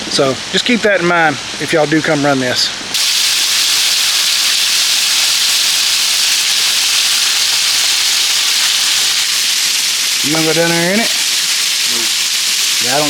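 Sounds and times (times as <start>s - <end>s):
waterfall splashing: 2.9s - 13.0s.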